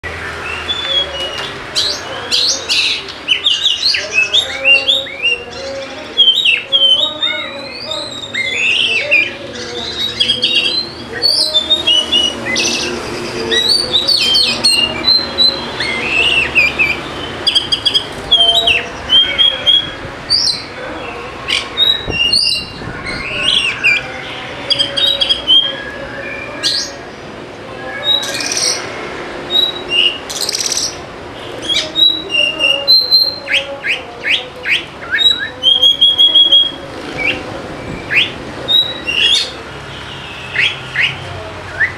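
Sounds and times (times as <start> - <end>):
bird singing chirps and whistles: 0.3 - 20.7, 21.5 - 24.1, 29.5 - 31.0, 31.6 - 39.6.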